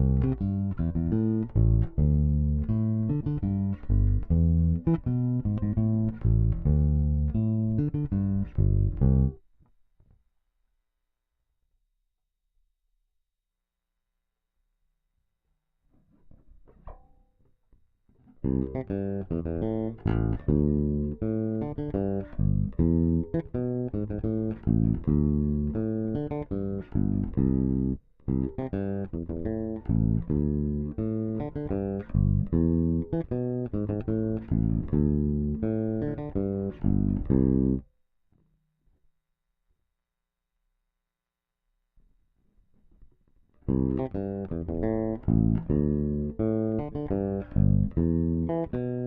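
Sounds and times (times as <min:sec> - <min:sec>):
electric bass plucked notes: 0:00.0 - 0:09.4, 0:18.4 - 0:37.8, 0:43.6 - 0:49.0.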